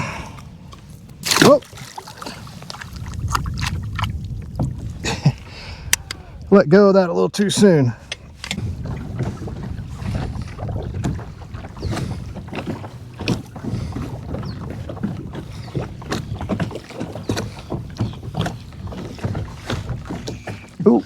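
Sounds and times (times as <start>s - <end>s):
wind rumble on microphone: 0.0s - 20.8s
water sloshing against kayak: 0.0s - 21.0s
gear knocking against hull: 8.0s - 21.0s.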